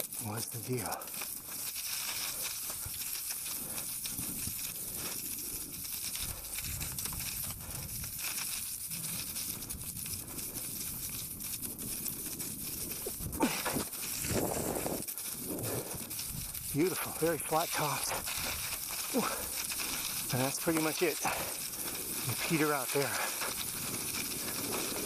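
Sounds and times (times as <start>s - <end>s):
bike tyres rolling on rough trail: 0.0s - 25.0s
high hiss: 0.0s - 25.0s
small crackles and clicks: 0.0s - 25.0s.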